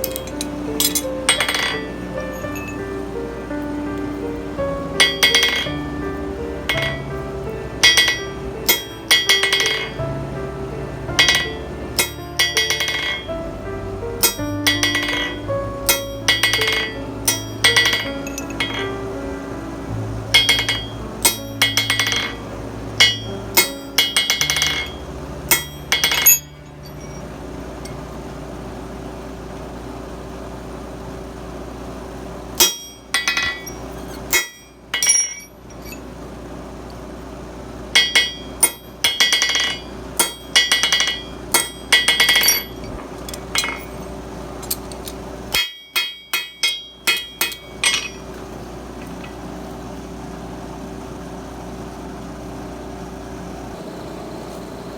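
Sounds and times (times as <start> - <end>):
hammer striking steel on anvil: 0.0 - 2.9, 5.0 - 6.0, 6.7 - 7.2, 7.8 - 10.0, 11.1 - 13.3, 14.2 - 19.0, 20.3 - 22.4, 23.0 - 28.0, 32.6 - 36.0, 38.0 - 48.4
steady hum: 0.0 - 54.9.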